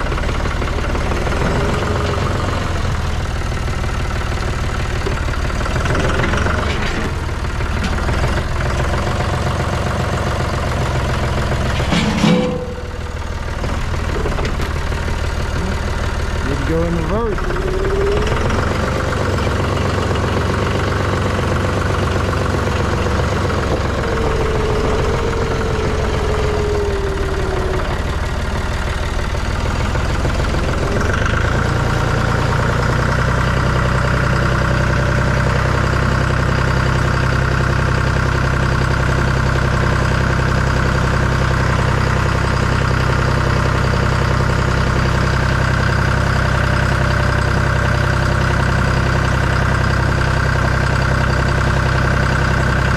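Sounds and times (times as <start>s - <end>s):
vehicle engine running: 0.0s - 52.9s.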